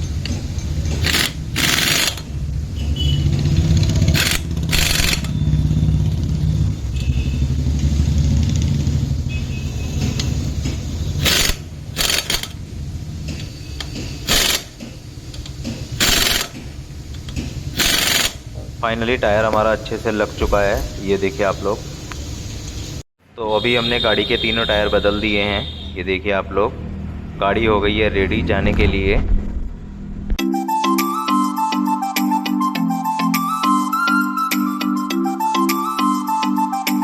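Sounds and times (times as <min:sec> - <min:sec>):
pneumatic impact wrench bursts: 0:00.2 - 0:02.4, 0:03.8 - 0:05.4, 0:11.0 - 0:12.6, 0:13.3 - 0:18.5.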